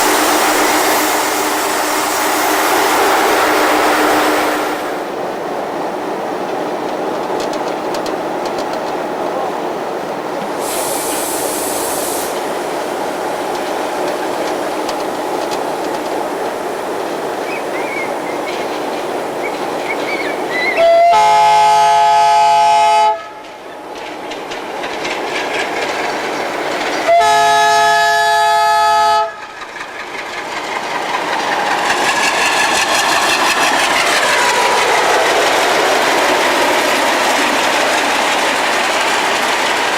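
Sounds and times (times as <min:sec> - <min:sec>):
trains running: 0:00.0 - 0:39.9
locomotive horn blasts: 0:03.0 - 0:04.8, 0:20.8 - 0:23.4, 0:27.1 - 0:29.4.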